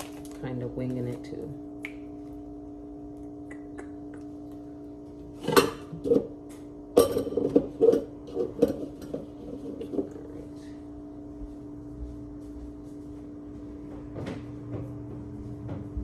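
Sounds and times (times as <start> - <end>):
steady hum: 0.0 - 16.0
kitchenware clinking and knocking: 7.0 - 10.2.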